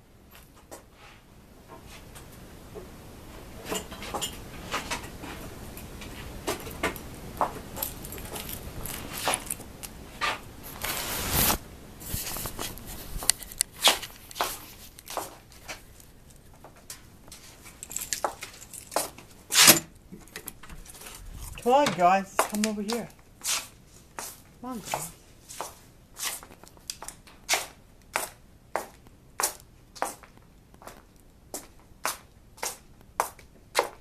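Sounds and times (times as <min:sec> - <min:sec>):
scraping rustle: 0:07.5 - 0:26.7
clicks taps and rustles: 0:12.2 - 0:23.2.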